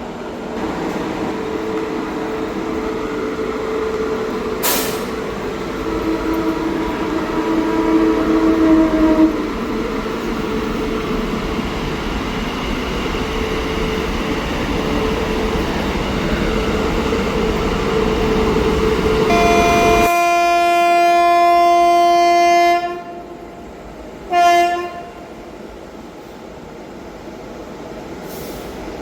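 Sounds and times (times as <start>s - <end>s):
train rumbling: 0.0s - 29.0s
locomotive air horn: 5.8s - 9.5s, 19.2s - 23.4s, 24.3s - 25.3s.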